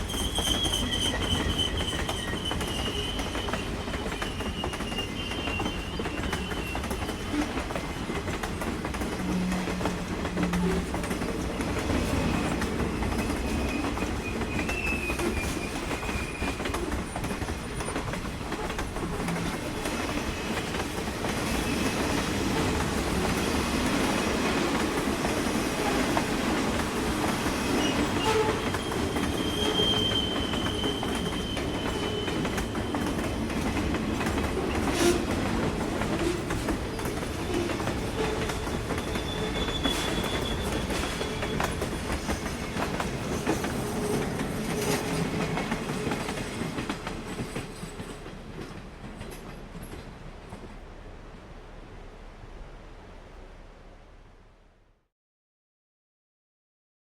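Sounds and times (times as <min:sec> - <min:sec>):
high wheel squeals: 0:00.0 - 0:07.5, 0:12.3 - 0:16.8, 0:27.6 - 0:33.2, 0:38.1 - 0:41.9
train cars rumbling on rails: 0:00.0 - 0:52.1.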